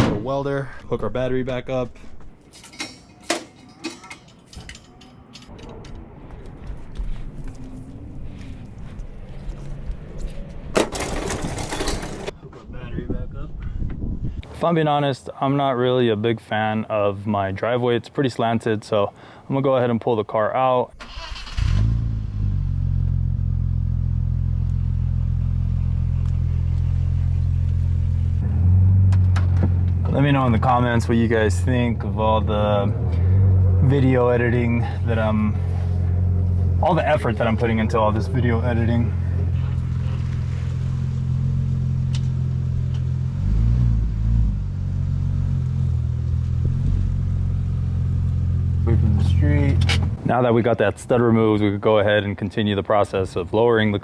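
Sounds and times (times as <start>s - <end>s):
car engine idling: 22.3s - 43.4s.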